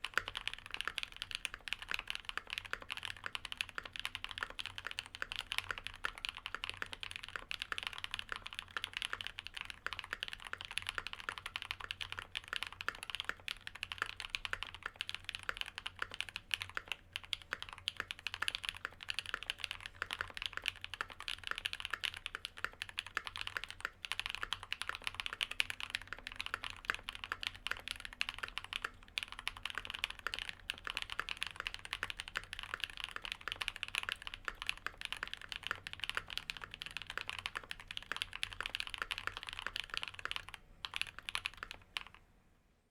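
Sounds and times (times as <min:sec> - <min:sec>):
fast typing on mechanical keyboard: 0:00.0 - 0:42.2.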